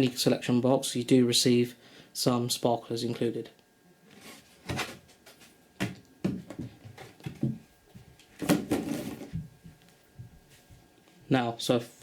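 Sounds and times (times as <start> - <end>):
cardboard box knocks and rustles: 8.4 - 9.5.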